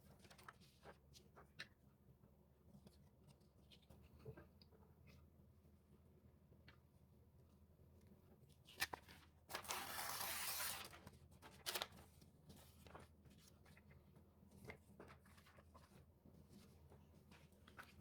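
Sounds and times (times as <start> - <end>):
paper tearing: 9.5 - 11.0.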